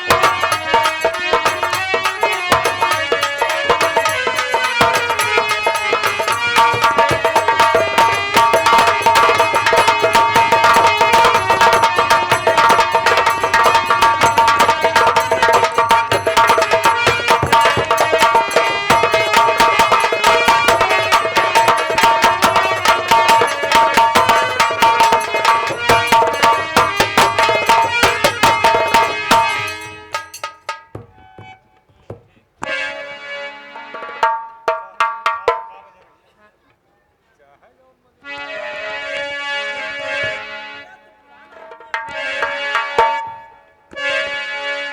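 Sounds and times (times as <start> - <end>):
held melody note: 0.0 - 31.8
fast hand drumming: 0.0 - 32.3, 34.2 - 35.9.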